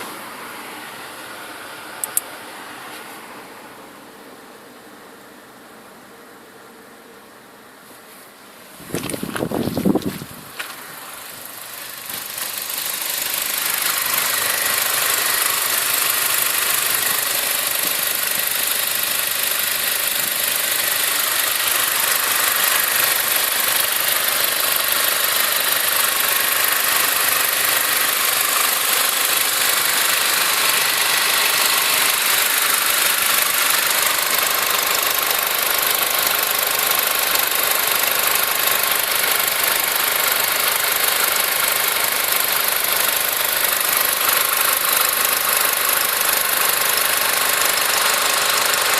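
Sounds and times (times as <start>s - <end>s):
car engine running: 8.7s - 48.9s.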